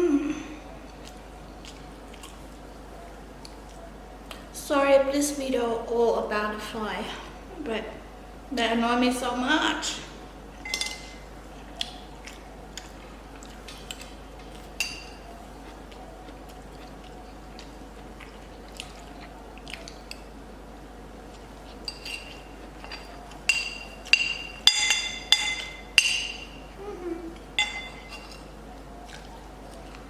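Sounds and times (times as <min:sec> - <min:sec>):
cutlery clinking against a dish: 0:10.6 - 0:11.2, 0:14.8 - 0:15.2, 0:21.8 - 0:26.6, 0:27.6 - 0:28.5.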